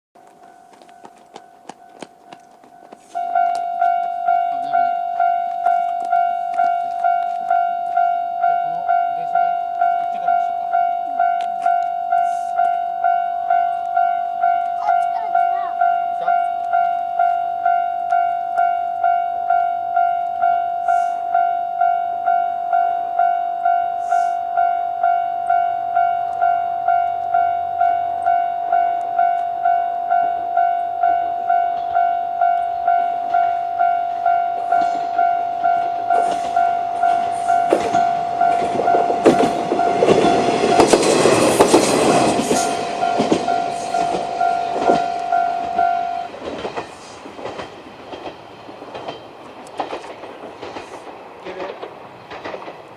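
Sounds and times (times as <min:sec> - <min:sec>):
level crossing alarm dinging: 0:00.2 - 0:46.8
diesel railcar running: 0:00.2 - 0:52.9
wheel clicks over rail joints: 0:46.4 - 0:52.9.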